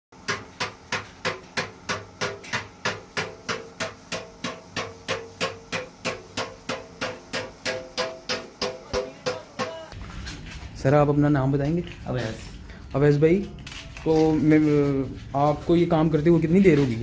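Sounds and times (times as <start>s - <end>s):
hammer blows on metal: 0.2s - 10.0s.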